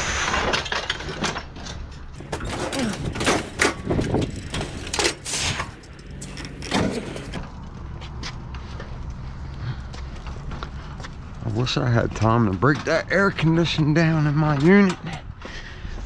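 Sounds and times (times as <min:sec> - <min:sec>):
metal stove scraping and clattering: 0:02.2 - 0:07.4.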